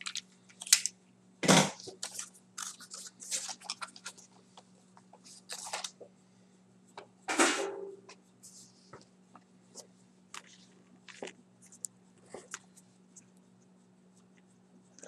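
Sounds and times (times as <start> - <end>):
cards and packaging being handled: 0.0 - 0.9, 1.8 - 4.4, 5.1 - 6.0, 10.3 - 12.8
faint electrical hum: 0.0 - 15.0.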